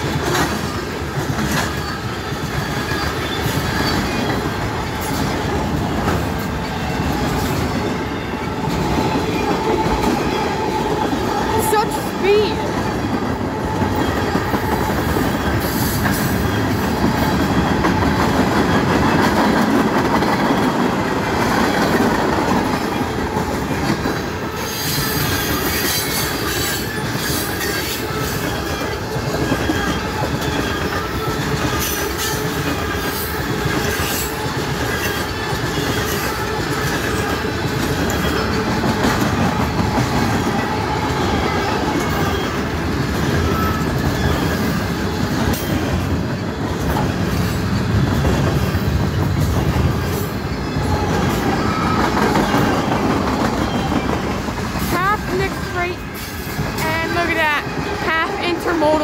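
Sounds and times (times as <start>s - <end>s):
wheels clicking over rail joints: 0.0s - 55.6s
freight train rumbling: 0.0s - 59.0s
faint high wheel squeal: 1.6s - 5.2s, 24.6s - 37.3s, 43.4s - 46.0s.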